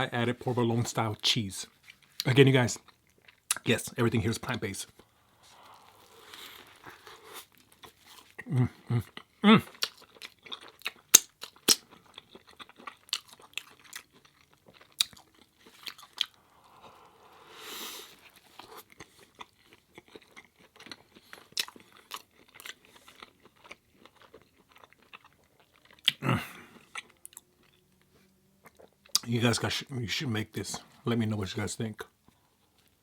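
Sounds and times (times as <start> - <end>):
person chewing food: 1.7 - 29.3
soft breathy swell: 5.2 - 6.6
wet mouth clicks and smacks: 10.9 - 11.8.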